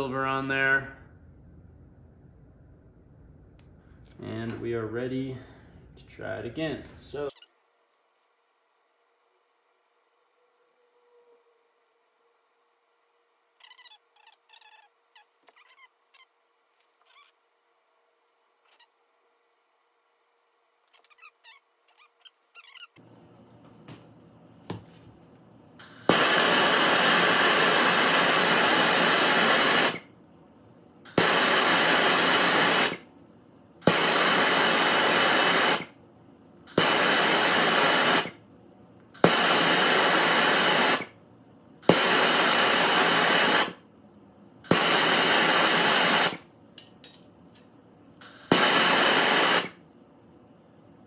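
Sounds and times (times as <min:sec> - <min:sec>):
torch ignition click: 0:25.8 - 0:30.0, 0:31.1 - 0:33.0, 0:33.8 - 0:35.9, 0:36.7 - 0:38.4, 0:39.2 - 0:41.1, 0:41.8 - 0:43.8, 0:44.6 - 0:46.9, 0:48.2 - 0:49.8
soldering torch hissing: 0:25.8 - 0:30.1, 0:31.1 - 0:33.1, 0:33.8 - 0:36.0, 0:36.7 - 0:38.4, 0:39.2 - 0:41.1, 0:41.8 - 0:43.8, 0:44.6 - 0:46.4, 0:48.2 - 0:49.8.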